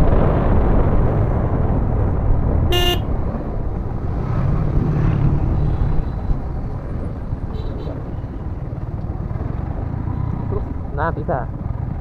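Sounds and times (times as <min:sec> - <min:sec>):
wind and motorcycle road rumble: 0:00.0 - 0:12.0
vehicle horn toot: 0:02.7 - 0:03.1.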